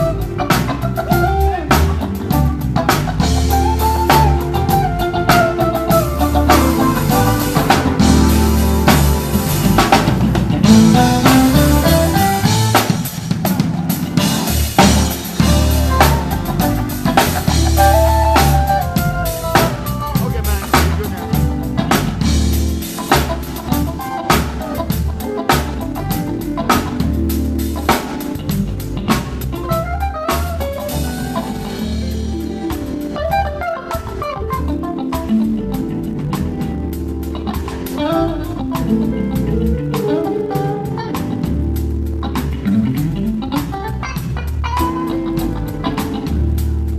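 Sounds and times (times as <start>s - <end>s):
band playing: 0.0s - 46.9s
guitar melody: 0.0s - 46.9s
bass drum and snare hits: 1.7s - 26.1s.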